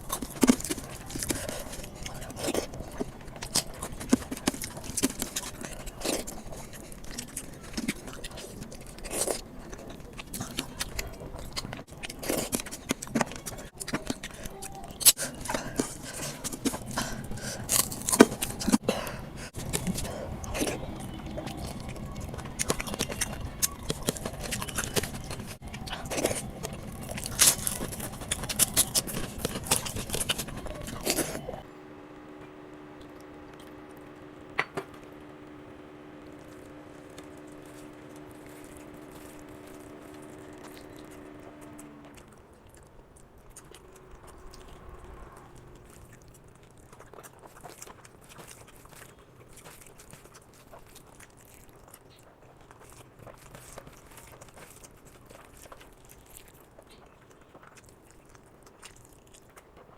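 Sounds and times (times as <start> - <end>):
steady hum: 0.0 - 46.8
chewing and crunching food: 0.0 - 59.9.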